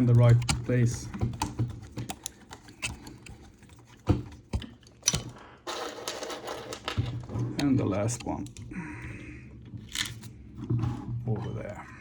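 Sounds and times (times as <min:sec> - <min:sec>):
screws and parts clicking: 0:00.0 - 0:08.7, 0:09.8 - 0:10.3.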